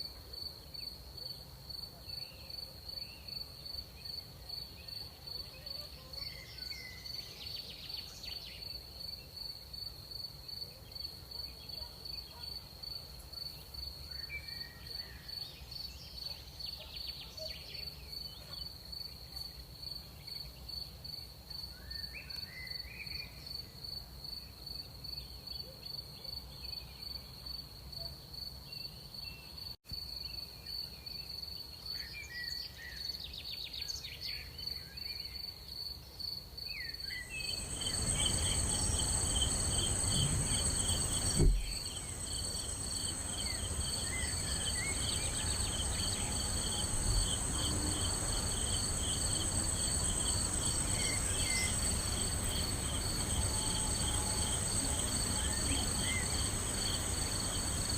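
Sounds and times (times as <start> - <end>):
background hiss: 0.0 - 57.9
crickets chirping: 35.4 - 57.9
higher insect chorus: 36.6 - 57.9
low thump: 37.9 - 42.7.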